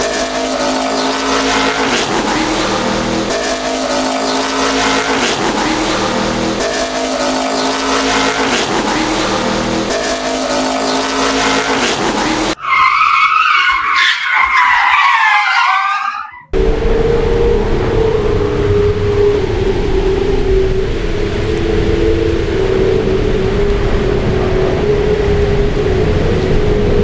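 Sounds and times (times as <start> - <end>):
car engine running: 0.0 - 12.6
high wavering squeal: 0.0 - 26.0.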